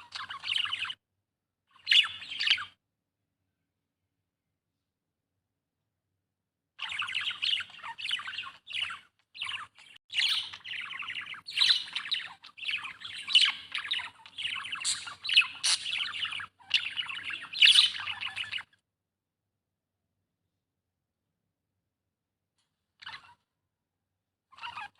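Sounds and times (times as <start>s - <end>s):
budgerigar chirping: 1.8s - 2.8s, 6.8s - 18.7s, 24.5s - 24.9s.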